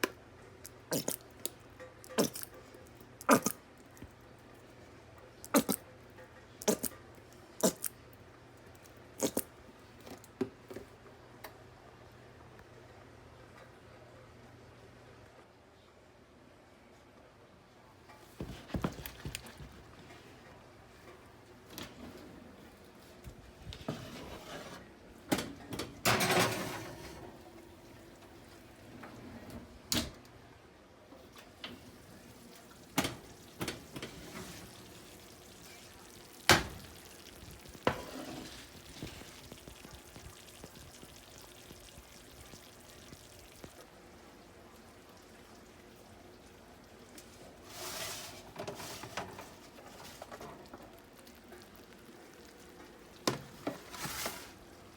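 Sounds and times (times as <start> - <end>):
rustling or scraping noise: 21.8 - 25.0, 33.0 - 35.2, 37.4 - 39.9, 47.2 - 50.8, 53.5 - 54.8
kitchenware knocking and clunking: 25.3 - 27.3.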